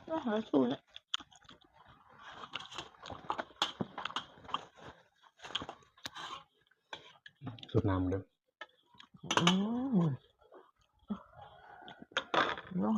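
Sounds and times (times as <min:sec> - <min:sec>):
person chewing food: 0:00.8 - 0:07.7, 0:08.6 - 0:09.3, 0:10.2 - 0:12.2
wet smacking and clicks: 0:00.9 - 0:01.7.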